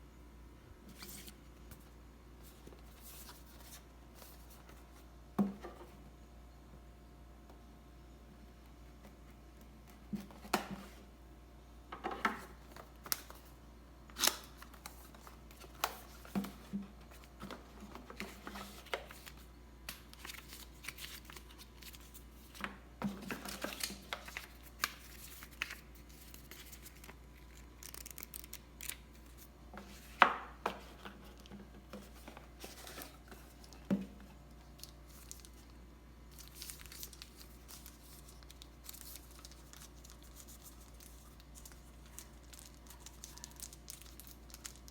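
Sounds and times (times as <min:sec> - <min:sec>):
packaging rustling: 0:36.3 - 0:44.9.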